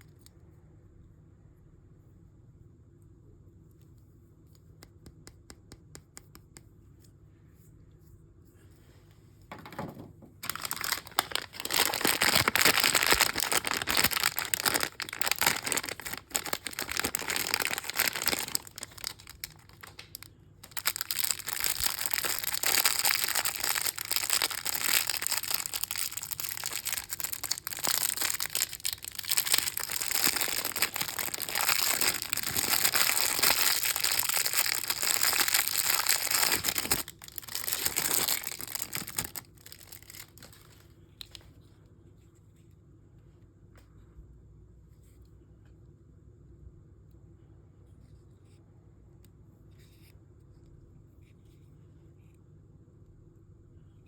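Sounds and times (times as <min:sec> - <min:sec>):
packaging crinkling and tearing: 0:10.4 - 0:41.5.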